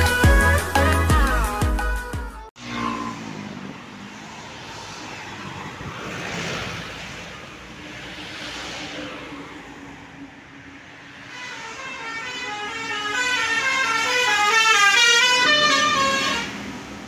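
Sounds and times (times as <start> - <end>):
roadside traffic noise: 2.5 - 17.0
vehicle passing by: 2.6 - 11.3.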